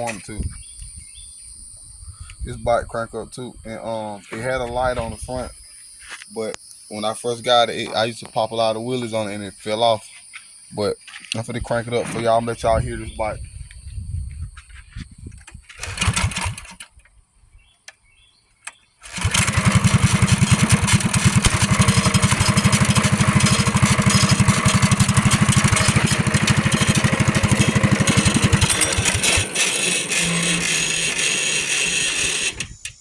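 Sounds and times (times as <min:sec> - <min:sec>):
small engine running loud: 0:15.8 - 0:16.7, 0:19.0 - 0:32.8.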